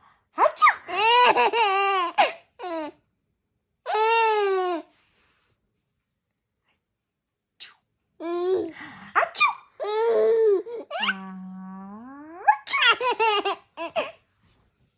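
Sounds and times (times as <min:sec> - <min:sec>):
baby laughing: 0:00.4 - 0:02.9, 0:12.5 - 0:14.2.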